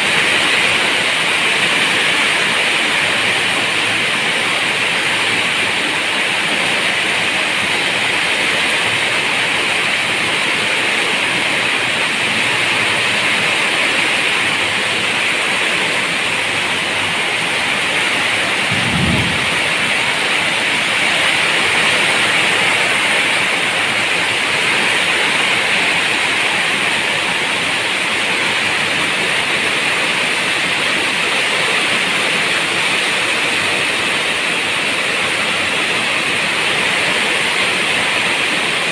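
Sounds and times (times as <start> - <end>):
steady rain hissing: 0.0 - 38.9
low thump: 18.7 - 19.9.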